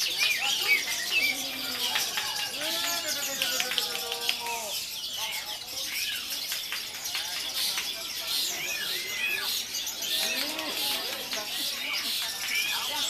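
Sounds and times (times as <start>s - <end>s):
many songbirds chirping: 0.0s - 13.0s
murmuring voices: 0.0s - 13.0s.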